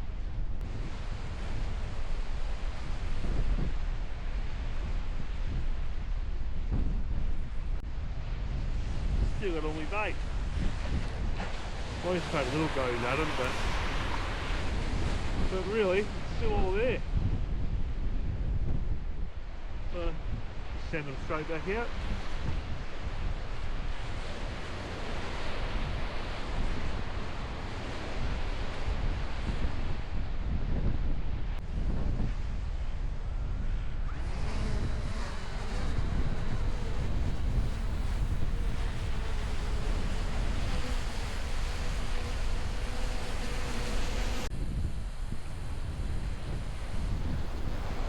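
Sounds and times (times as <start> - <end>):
surf washing on a beach: 0.0 - 48.0
wind buffeting microphone: 0.0 - 48.0
faint insect buzz: 34.1 - 48.0.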